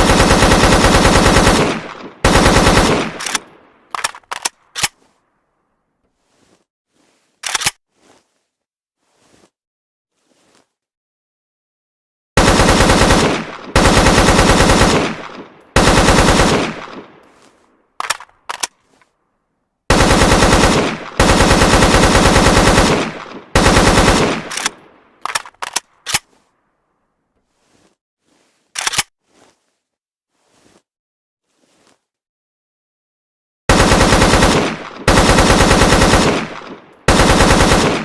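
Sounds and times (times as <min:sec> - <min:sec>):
automatic rifle bursts: 0:00.0 - 0:05.0, 0:12.4 - 0:17.1, 0:19.9 - 0:26.3, 0:33.7 - 0:38.0
single gunshots: 0:12.7 - 0:17.2, 0:34.0 - 0:38.0.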